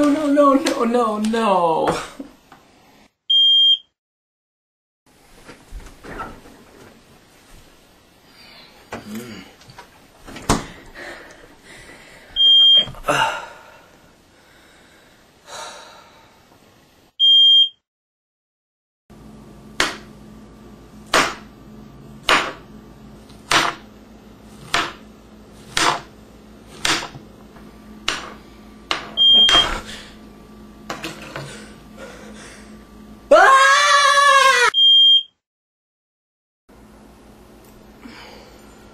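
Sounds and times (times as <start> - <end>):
smoke alarm chirping: 3.3 - 3.9, 12.4 - 12.9, 17.2 - 17.8, 29.2 - 29.8, 34.8 - 35.4.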